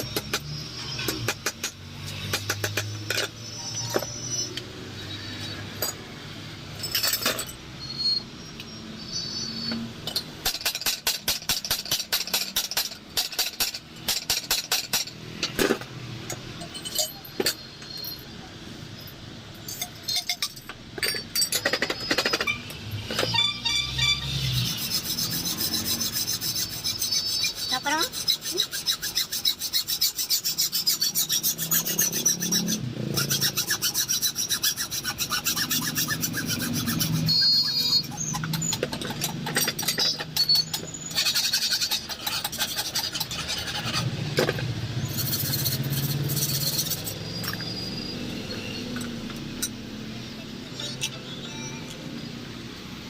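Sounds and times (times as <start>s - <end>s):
metal rubbing and scraping: 19.0s - 49.9s.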